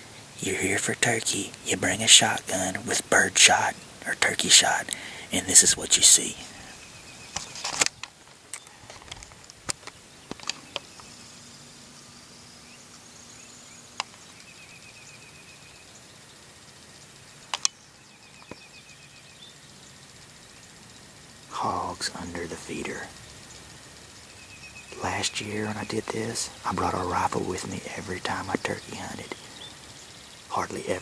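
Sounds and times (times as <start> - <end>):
background hiss: 0.0 - 31.0
sharp clicks and ticks: 0.8 - 6.1, 17.5 - 18.7.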